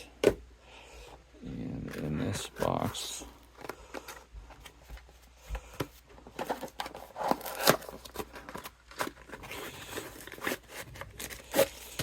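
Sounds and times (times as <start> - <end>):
packaging tearing and crinkling: 6.5 - 12.0.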